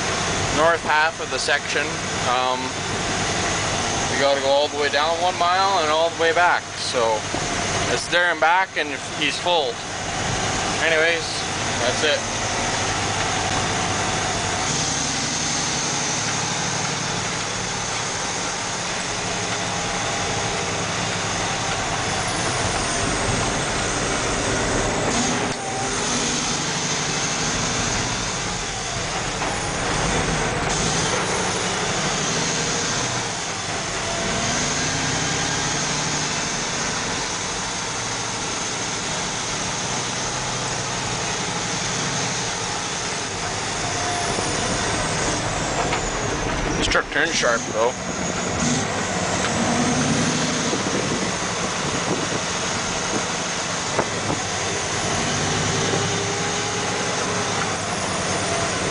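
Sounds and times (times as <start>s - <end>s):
truck engine from inside cab: 0.0s - 58.9s.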